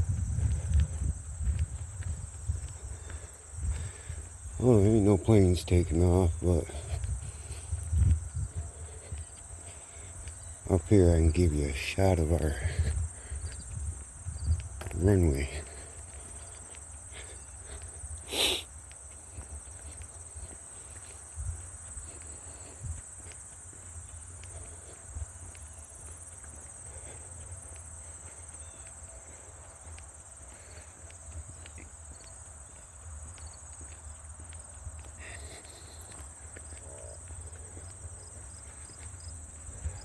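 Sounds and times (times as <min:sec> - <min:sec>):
footsteps on a trail: 0:00.0 - 0:40.0
high-pitched insect buzz: 0:18.3 - 0:18.7.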